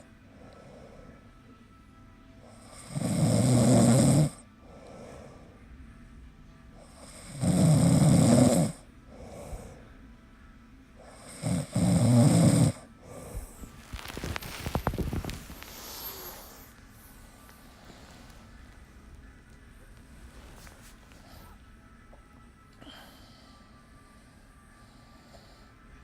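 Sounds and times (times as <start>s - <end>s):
soft breaths: 0.0s - 3.0s, 3.9s - 26.0s
person snoring: 2.5s - 5.6s, 6.8s - 9.9s, 11.0s - 18.5s.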